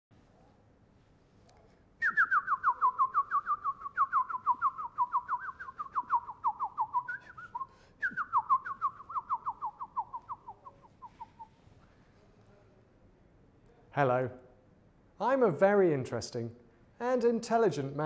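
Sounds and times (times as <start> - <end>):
bird-like whistling: 2.0 - 11.6.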